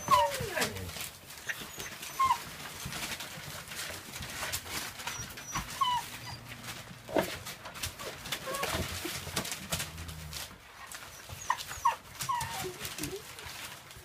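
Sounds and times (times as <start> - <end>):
puppies whimpering: 0.0 - 3.4, 4.8 - 9.2, 10.3 - 13.4.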